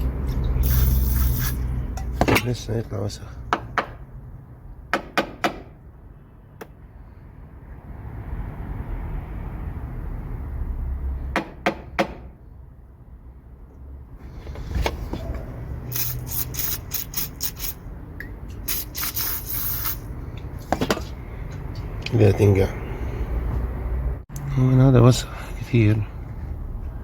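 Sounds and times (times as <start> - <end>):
short hissing bursts: 0.6 - 1.8, 15.9 - 17.8, 18.6 - 20.1.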